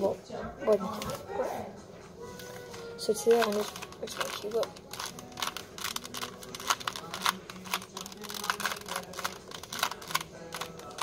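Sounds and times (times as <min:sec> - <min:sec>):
puzzle cube clicking as turned: 0:03.3 - 0:11.0.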